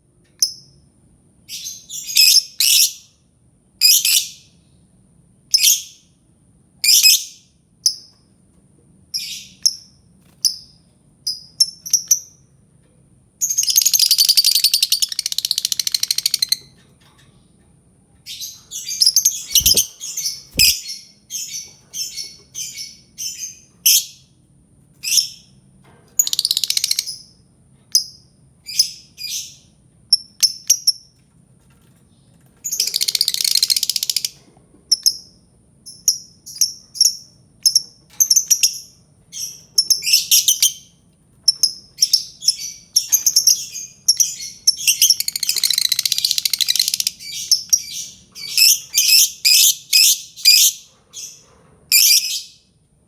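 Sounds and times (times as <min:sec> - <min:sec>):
bird chattering: 0:13.6 - 0:16.6, 0:18.8 - 0:20.9
bird chirping shrilly: 0:18.7 - 0:21.5.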